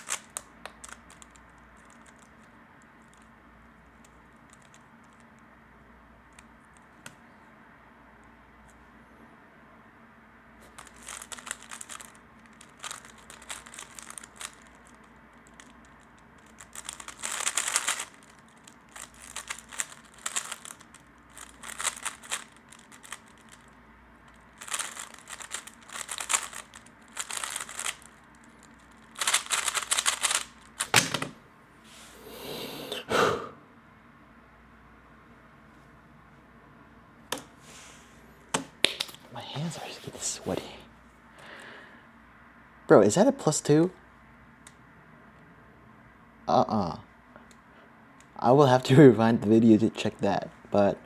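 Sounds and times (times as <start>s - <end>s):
puzzle cube layers clacking: 0.0s - 2.4s, 10.7s - 23.7s, 24.6s - 31.4s, 38.6s - 40.6s.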